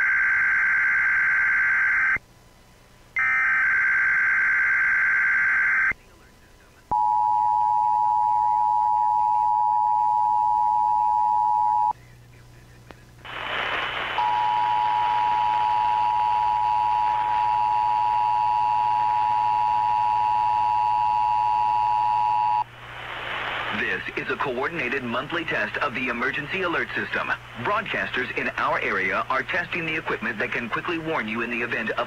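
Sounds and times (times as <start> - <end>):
background hiss: 11.5 - 17.6, 22.6 - 32.0.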